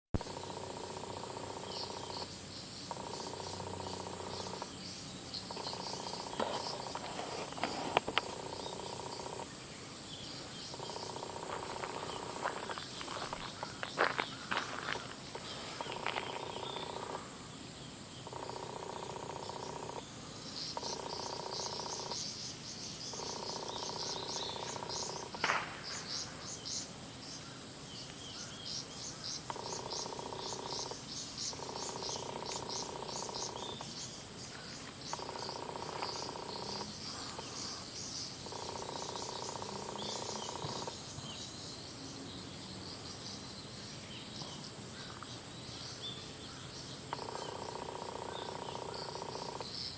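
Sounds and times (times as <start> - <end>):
insects trilling: 0.2 - 49.9
sharp knock: 25.4 - 26.0.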